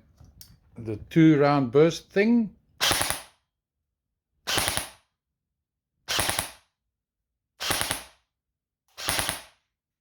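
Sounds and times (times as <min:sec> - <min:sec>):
airsoft rifle firing bursts: 0:02.8 - 0:03.4, 0:04.5 - 0:05.1, 0:06.1 - 0:06.7, 0:07.6 - 0:08.2, 0:09.0 - 0:09.6.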